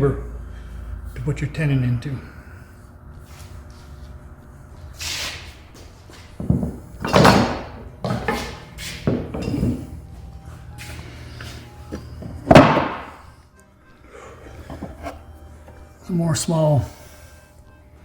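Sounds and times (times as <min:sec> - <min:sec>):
hand tools knocking and scraping: 0:06.4 - 0:10.0, 0:11.4 - 0:13.2, 0:14.6 - 0:15.8.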